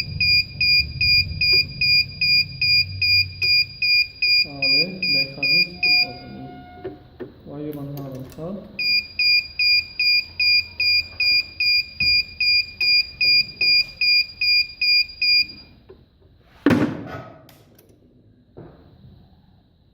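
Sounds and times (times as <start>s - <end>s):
loud thump: 0.0s - 4.0s, 16.6s - 17.4s
electronic buzzer beeping: 0.0s - 7.1s, 8.8s - 15.7s.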